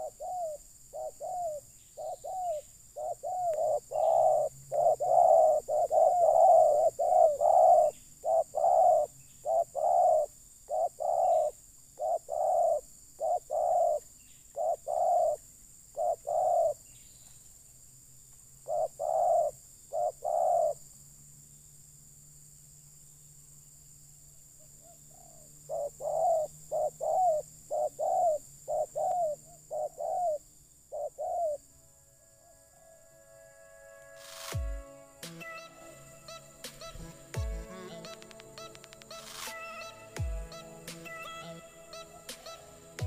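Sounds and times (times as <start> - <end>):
dove cooing: 0.0 - 15.4, 16.0 - 16.8, 18.7 - 20.8, 24.8 - 31.6, 35.5 - 43.0.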